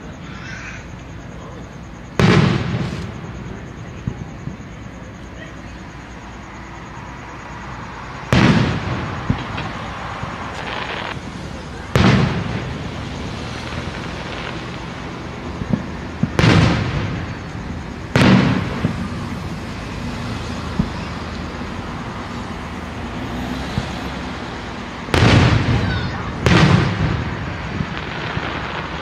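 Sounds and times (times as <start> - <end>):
fireworks booming with echo: 0.0 - 29.0
small fireworks pops: 2.1 - 5.8, 8.3 - 19.5, 20.6 - 21.7, 23.7 - 24.1, 24.7 - 29.0.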